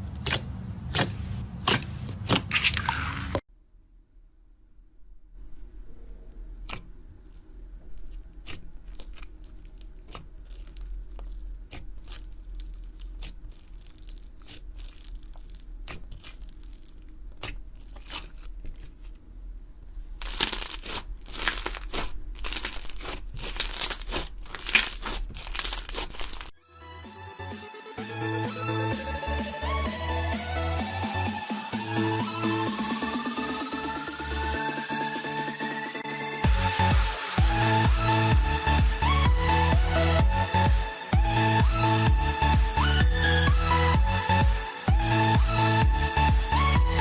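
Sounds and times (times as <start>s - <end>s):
slime popping: 6.4s - 19.2s, 20.2s - 26.5s
electronic music: 26.6s - 47.0s.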